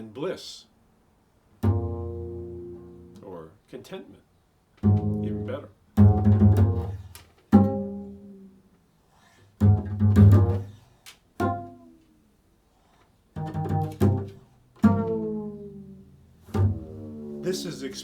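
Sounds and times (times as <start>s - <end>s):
low string instrument plucked: 1.6s - 3.2s, 4.8s - 8.5s, 9.6s - 10.7s, 11.4s - 12.0s, 13.4s - 18.0s.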